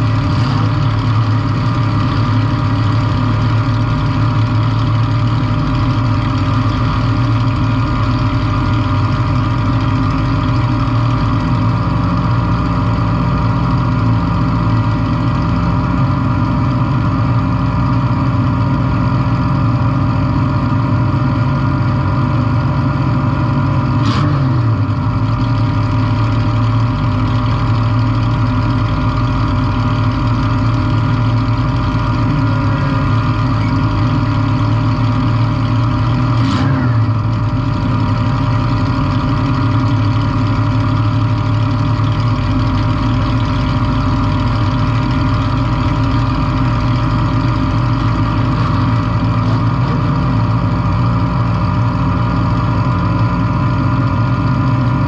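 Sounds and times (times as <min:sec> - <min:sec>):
car engine running loud: 0:00.0 - 0:55.0.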